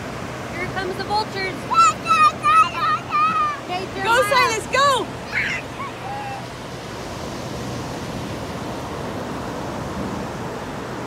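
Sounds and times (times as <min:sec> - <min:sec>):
ocean surf: 0:00.0 - 0:11.0
wind: 0:00.0 - 0:11.0
voices: 0:00.5 - 0:06.5.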